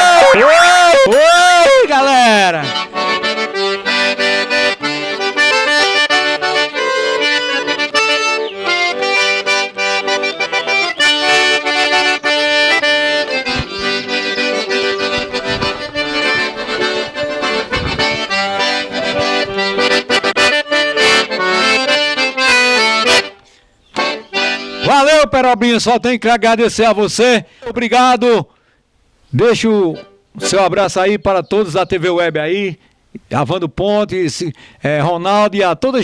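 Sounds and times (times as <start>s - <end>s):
accordion playing: 0.0s - 25.2s, 29.7s - 31.0s.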